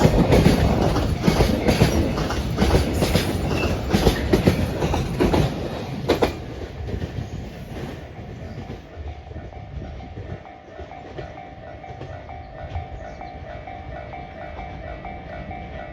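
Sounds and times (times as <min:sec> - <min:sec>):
train wheels clacking over rail joints: 0:00.0 - 0:08.9
level-crossing warning bell: 0:09.3 - 0:15.9.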